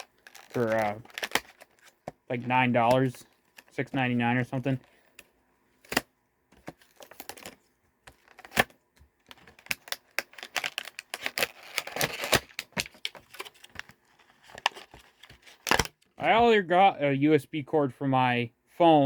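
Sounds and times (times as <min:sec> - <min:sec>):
plastic crinkling: 0:00.0 - 0:02.0, 0:08.2 - 0:16.0.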